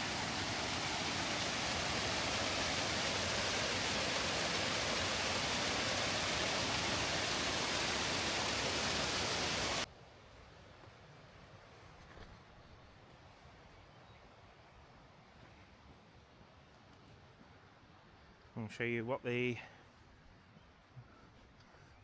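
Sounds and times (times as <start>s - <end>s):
waterfall rushing: 0.0s - 9.9s.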